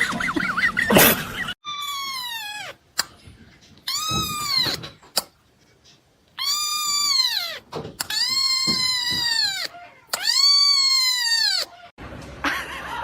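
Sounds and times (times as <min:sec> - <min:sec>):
cat yowling: 0:01.6 - 0:02.8, 0:03.9 - 0:04.9, 0:06.4 - 0:11.9.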